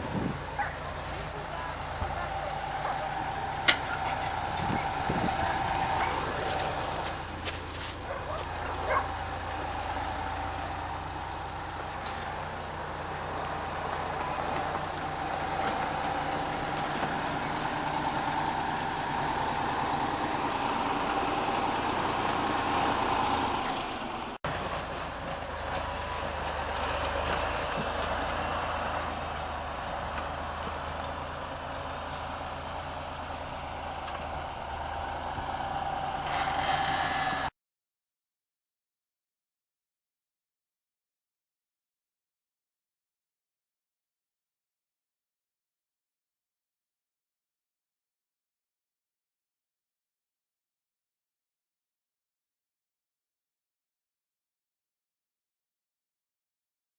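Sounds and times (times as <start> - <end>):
motor grader diesel engine running: 0.0 - 37.5.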